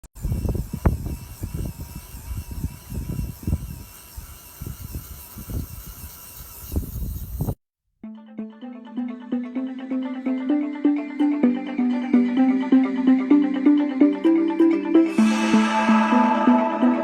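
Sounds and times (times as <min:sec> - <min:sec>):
music: 0:08.0 - 0:17.0.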